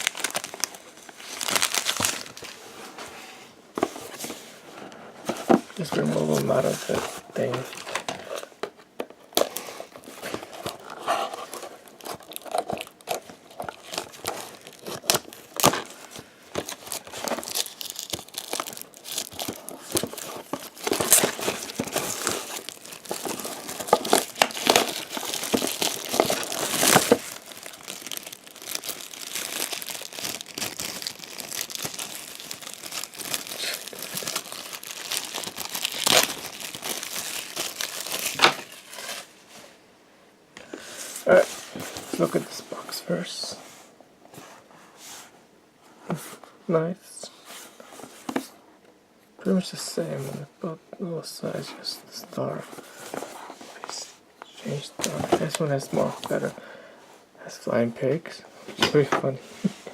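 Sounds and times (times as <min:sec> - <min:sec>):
packaging crinkling and tearing: 0:00.0 - 0:02.6, 0:05.8 - 0:39.3, 0:52.1 - 0:56.6.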